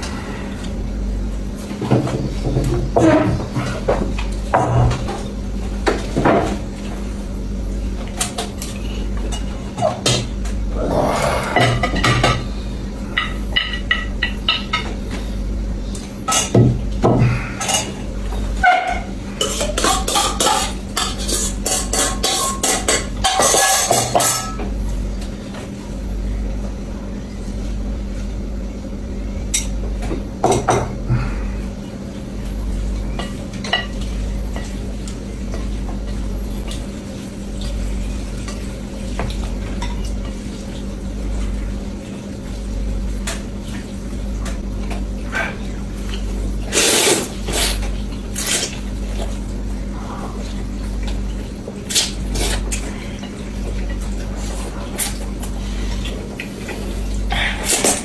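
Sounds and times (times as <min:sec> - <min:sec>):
steady low hum: 0:00.0 - 0:20.0, 0:24.3 - 0:58.0
utensils clinking against a bowl: 0:11.4 - 0:12.5, 0:13.1 - 0:15.2, 0:15.9 - 0:16.7, 0:17.5 - 0:24.8.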